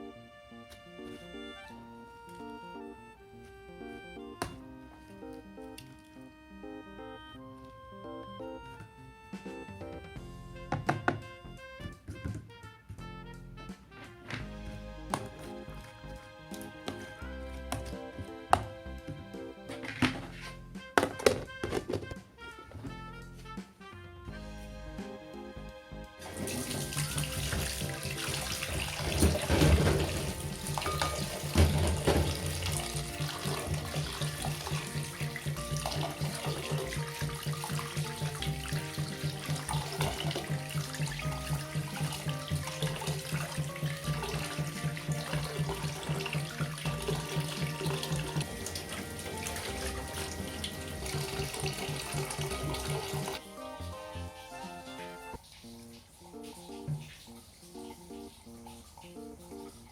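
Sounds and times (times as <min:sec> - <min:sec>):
background music: 0:00.0 - 0:59.9
tap water running into sink: 0:26.2 - 0:53.4, 0:54.6 - 0:59.9.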